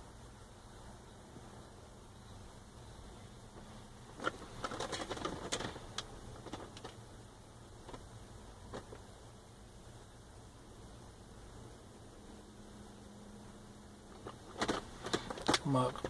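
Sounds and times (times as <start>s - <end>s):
small clicks and light knocks: 3.5s - 7.0s, 7.8s - 8.1s, 8.7s - 9.1s, 14.1s - 16.0s.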